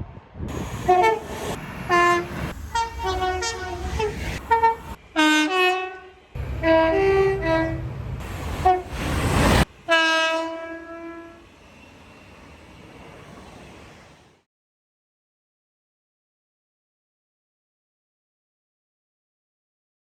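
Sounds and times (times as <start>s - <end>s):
rush of noise: 0.0s - 5.2s, 7.7s - 9.8s
locomotive air horn chords: 0.8s - 1.3s, 1.9s - 8.0s, 8.6s - 9.0s, 9.8s - 11.4s.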